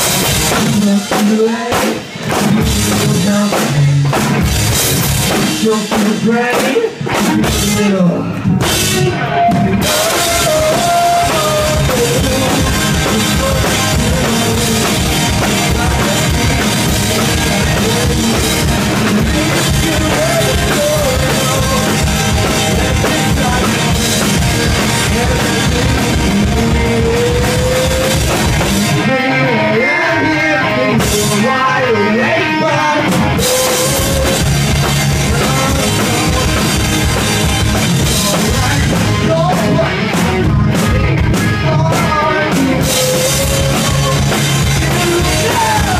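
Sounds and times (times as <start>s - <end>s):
person singing: 0.0s - 4.2s, 5.3s - 45.9s
rock band playing live: 0.0s - 45.9s.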